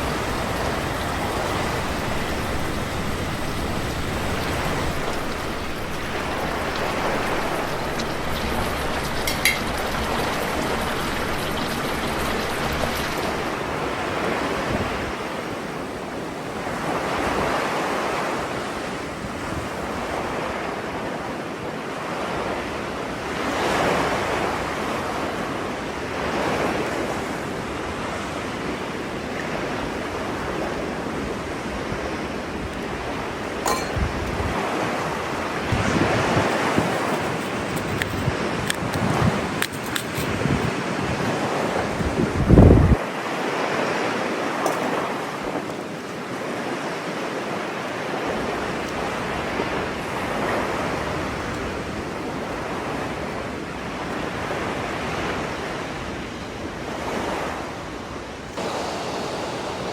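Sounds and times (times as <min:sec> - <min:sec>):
wind rumble on microphone: 0:00.0 - 0:15.4, 0:29.4 - 0:44.3
sea waves breaking on shore: 0:00.0 - 0:59.9.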